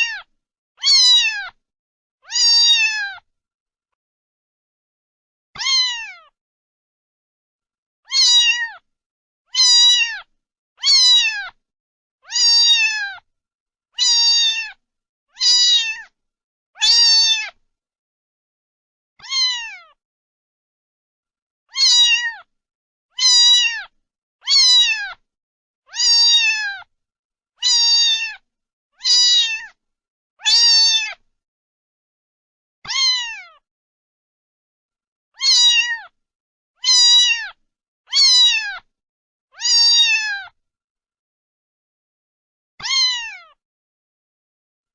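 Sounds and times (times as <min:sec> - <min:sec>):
cat meowing: 0:00.0 - 0:01.6, 0:02.2 - 0:03.2, 0:05.6 - 0:06.4, 0:08.1 - 0:08.8, 0:09.5 - 0:11.6, 0:12.2 - 0:13.2, 0:14.0 - 0:16.2, 0:16.8 - 0:17.6, 0:19.2 - 0:20.0, 0:21.7 - 0:22.5, 0:23.1 - 0:25.2, 0:25.9 - 0:26.9, 0:27.6 - 0:28.4, 0:29.0 - 0:29.8, 0:30.4 - 0:31.2, 0:32.8 - 0:33.6, 0:35.4 - 0:36.2, 0:36.8 - 0:38.9, 0:39.6 - 0:40.6, 0:42.8 - 0:43.6.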